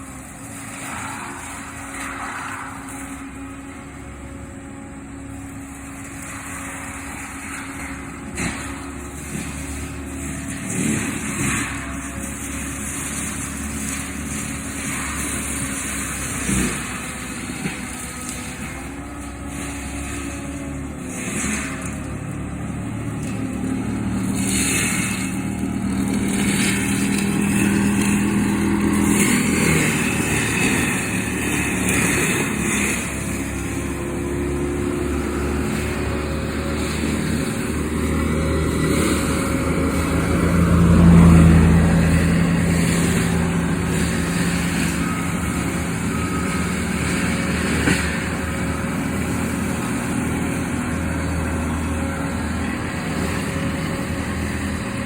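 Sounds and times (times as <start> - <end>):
heavy machinery engine under load: 0.0 - 55.0.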